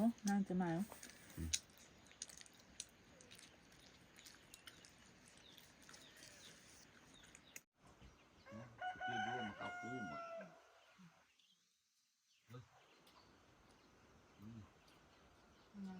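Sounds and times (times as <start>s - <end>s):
rooster crowing: 8.4s - 10.6s.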